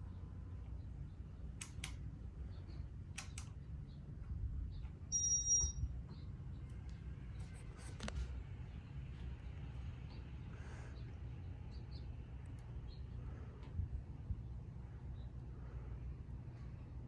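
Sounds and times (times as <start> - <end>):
ceiling fan humming: 0.0 - 17.0
sharp clicks: 1.6 - 2.0, 3.2 - 3.6
high electronic beep: 5.1 - 5.9.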